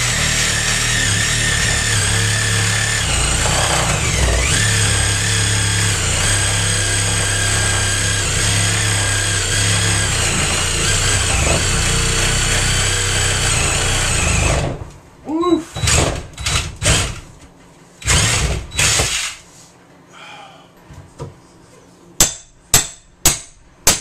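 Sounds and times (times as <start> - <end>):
power tool motor whining: 0.0 - 14.8.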